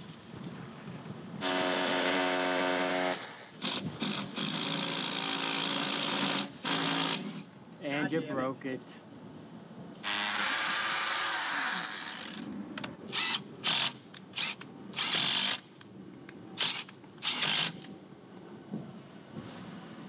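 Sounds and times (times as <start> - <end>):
power drill running: 13.1 - 15.6, 16.6 - 17.8.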